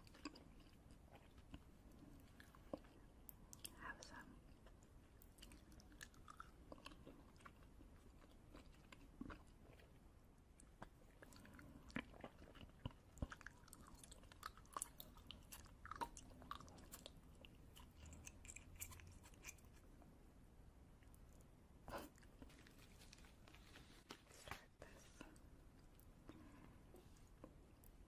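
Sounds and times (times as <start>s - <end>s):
chewing crunchy food: 0.0s - 20.1s.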